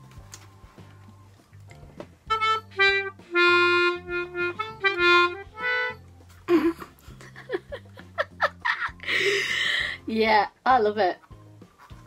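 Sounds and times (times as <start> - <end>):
melodica playing: 2.3 - 6.1.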